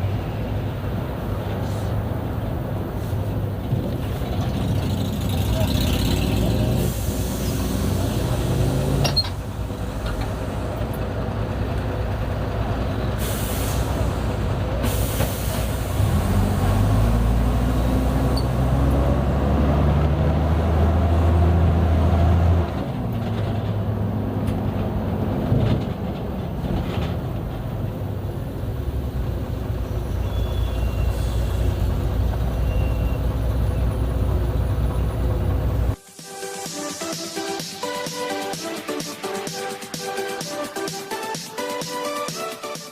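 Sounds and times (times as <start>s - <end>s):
bus diesel engine running: 0.0s - 42.9s
air brake hisses: 1.6s - 2.0s, 6.7s - 10.6s, 13.2s - 16.5s, 30.2s - 32.0s.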